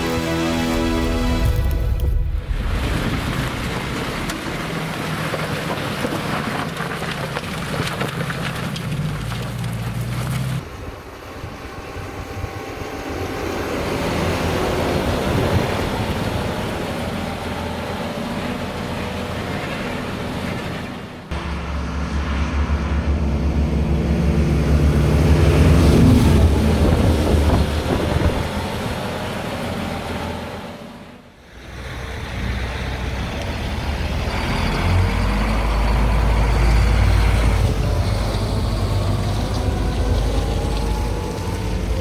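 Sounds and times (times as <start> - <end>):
tractor engine running under load: 1.5 - 42.0
wind noise on microphone: 24.6 - 29.0.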